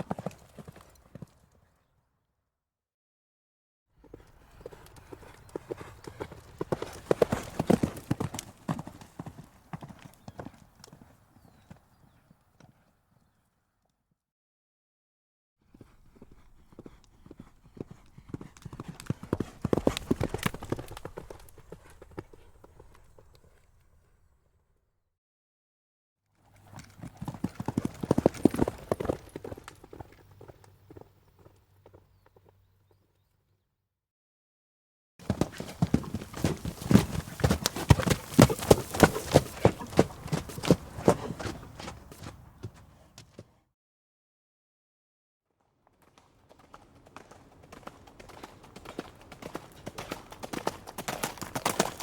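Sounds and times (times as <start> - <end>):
horse hooves clip-clopping: 0.0 - 1.4, 4.0 - 12.9, 15.8 - 23.7, 26.6 - 32.6, 35.2 - 43.5, 45.9 - 52.0.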